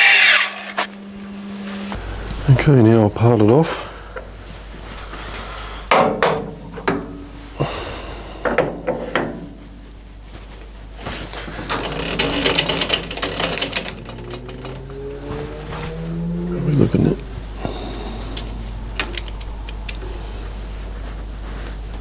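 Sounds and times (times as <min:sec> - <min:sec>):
lathe humming: 0:00.0 - 0:02.6, 0:11.3 - 0:21.3
parting tool clicking and chattering: 0:11.4 - 0:20.3.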